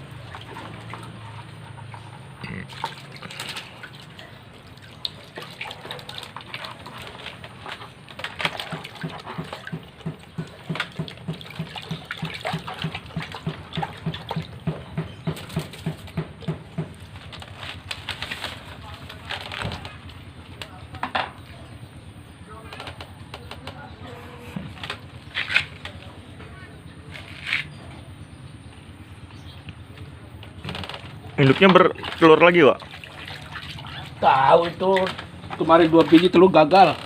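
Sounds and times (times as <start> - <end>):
bird splashing in water dish: 2.6 - 20.2, 30.8 - 36.3.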